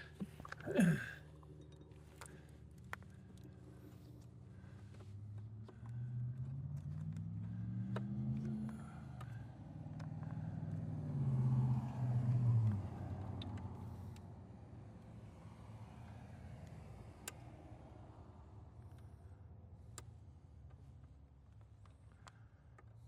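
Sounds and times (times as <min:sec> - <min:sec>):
vehicle engine driving by: 0:02.0 - 0:18.6.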